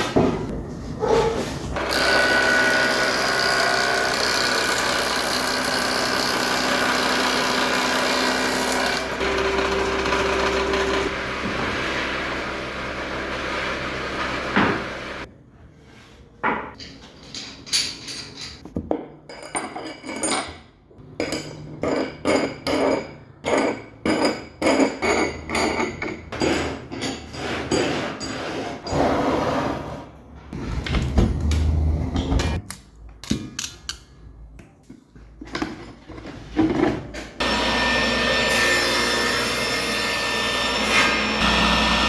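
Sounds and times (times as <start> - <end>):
power tool running: 1.8 - 15.3, 37.4 - 42.0.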